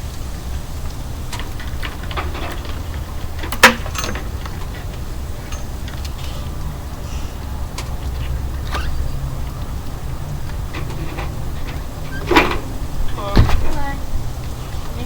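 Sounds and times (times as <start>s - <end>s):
hardware clicks and clinks: 1.3s - 6.2s
steady low rumble: 4.2s - 15.0s.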